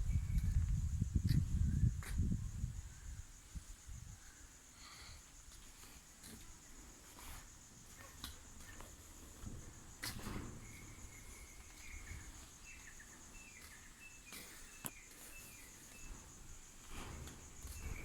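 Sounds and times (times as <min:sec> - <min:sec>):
high pulsing insect trill: 0:00.0 - 0:18.0.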